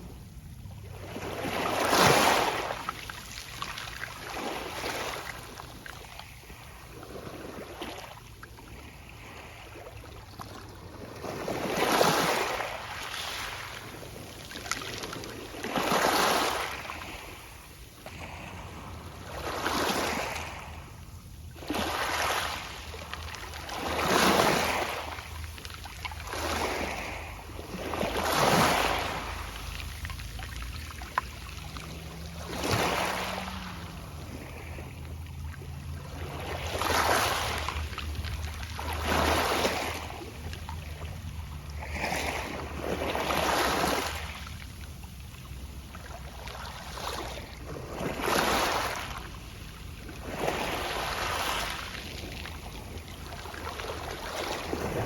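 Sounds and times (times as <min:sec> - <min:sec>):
waves washing onto pebble beach: 0:11.6 - 0:17.5, 0:21.6 - 0:35.2, 0:35.8 - 0:44.5, 0:50.1 - 0:55.0.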